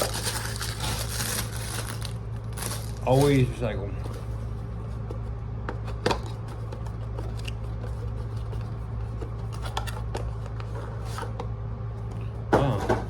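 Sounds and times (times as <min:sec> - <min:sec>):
packaging clicks and rustles: 0:00.0 - 0:03.5.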